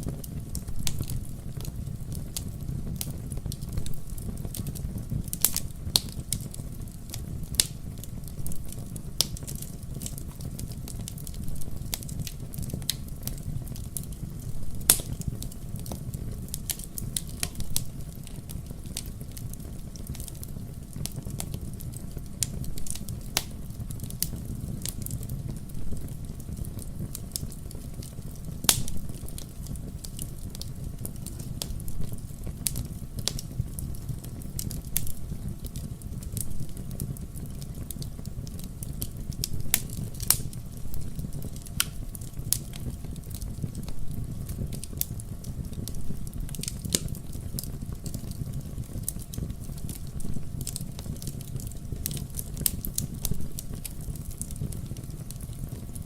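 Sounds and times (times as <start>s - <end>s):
fire crackling and popping: 0.0s - 56.0s
fire rumbling in a fireplace: 0.0s - 56.0s.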